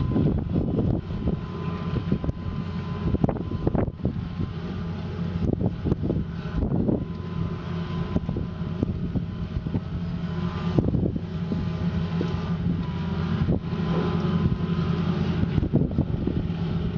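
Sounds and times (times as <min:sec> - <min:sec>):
diesel excavator engine running: 0:00.0 - 0:16.9
faint steady whine: 0:00.0 - 0:16.9.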